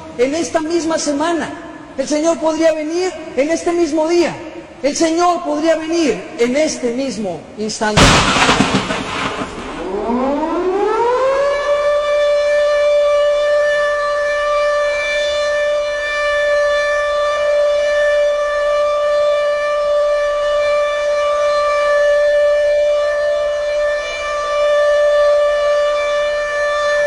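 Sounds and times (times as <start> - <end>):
trumpet-like blast: 8.0 - 10.2.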